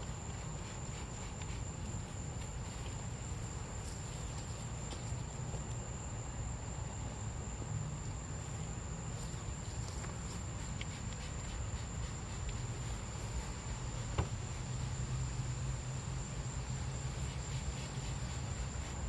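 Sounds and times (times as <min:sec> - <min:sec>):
insects droning: 0:00.0 - 0:19.0.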